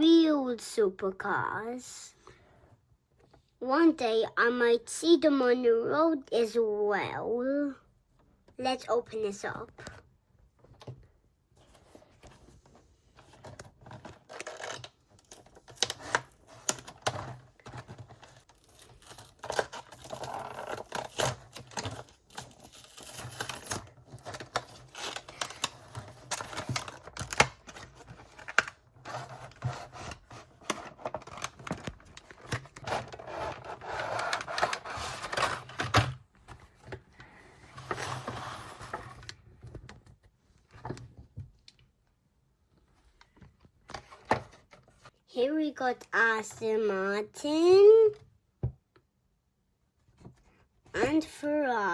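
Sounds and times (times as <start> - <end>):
packaging being torn open: 18.5 - 28.8.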